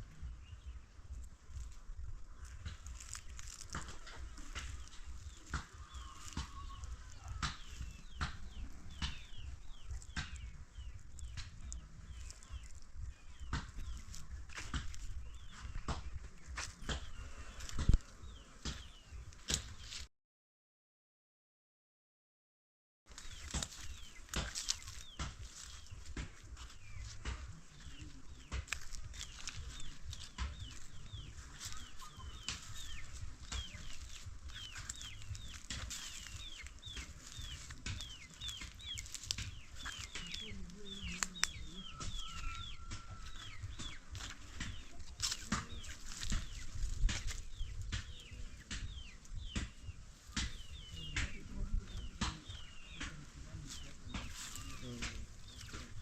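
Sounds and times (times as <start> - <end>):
chicks cheeping: 0.0 - 20.0, 23.1 - 56.0.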